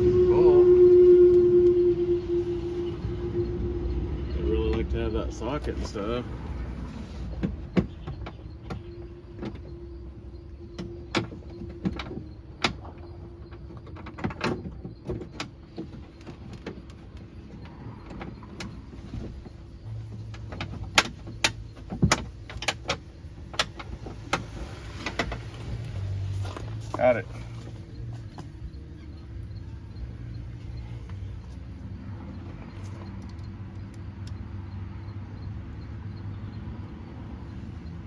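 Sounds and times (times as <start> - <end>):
faint steady hum: 0.0 - 7.2.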